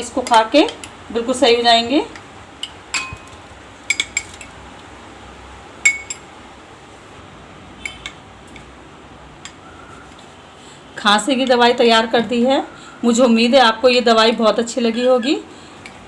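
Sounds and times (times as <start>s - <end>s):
spoon clinking against bowl: 2.1s - 4.5s, 5.8s - 6.3s, 7.8s - 8.7s.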